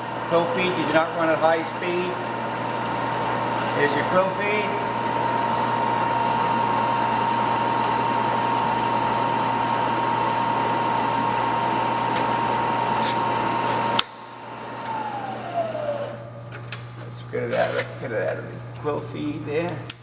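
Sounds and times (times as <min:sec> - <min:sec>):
machine winding down whine: 0:00.0 - 0:16.4
milling machine whine and hum: 0:00.0 - 0:20.0.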